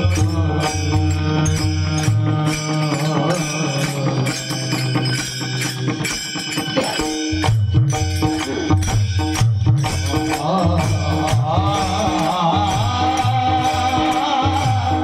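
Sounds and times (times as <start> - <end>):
man singing: 0.0 - 6.2, 10.1 - 15.0
percussion beat: 0.0 - 15.0
sustained instrumental tones: 0.0 - 15.0.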